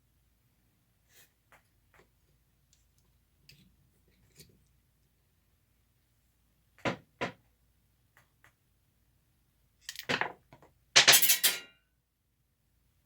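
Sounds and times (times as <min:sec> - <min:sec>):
small parts dropping and bouncing: 0:09.8 - 0:11.7
metal tools knocking on workbench: 0:11.0 - 0:11.7.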